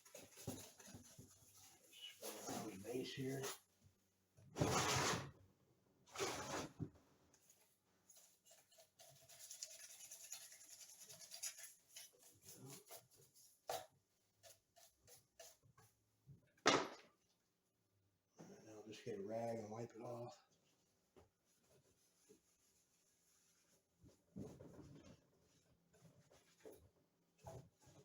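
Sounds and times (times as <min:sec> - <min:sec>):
brush scrubbing metal: 0:00.0 - 0:03.7, 0:08.1 - 0:13.8, 0:14.4 - 0:15.9.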